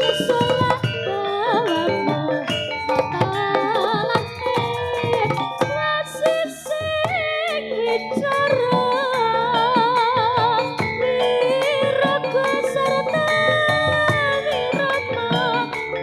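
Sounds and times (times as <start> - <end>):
drum strikes: 0.0 - 7.4, 8.0 - 16.0
wavering vibrato melody: 0.0 - 16.0.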